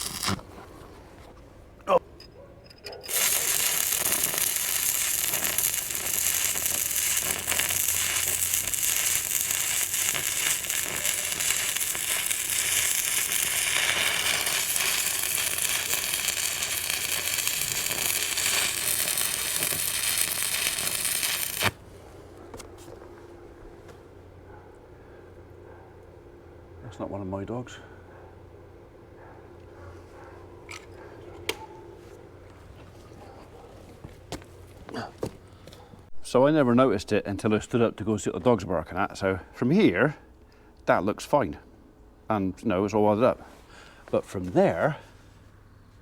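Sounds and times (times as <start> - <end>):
arc welding crackle and sizzle: 0.0 - 0.5, 3.1 - 21.9.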